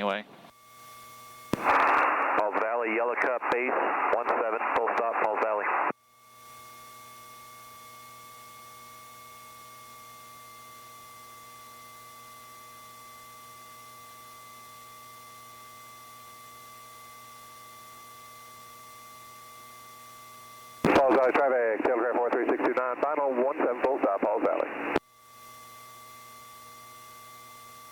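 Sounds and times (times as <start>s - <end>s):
whine of thin tones: 0.5s - 27.9s.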